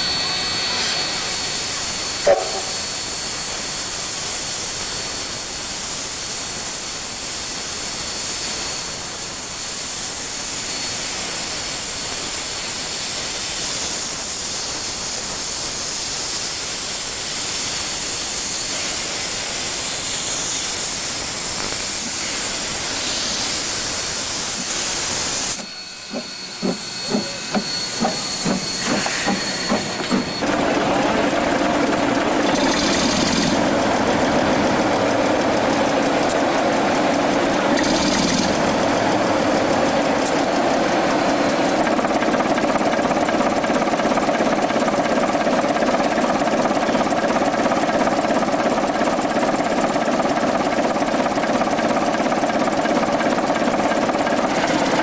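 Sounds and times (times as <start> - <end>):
steam locomotive hissing: 0.0 - 55.0
rhythmic knocks: 26.0 - 30.4.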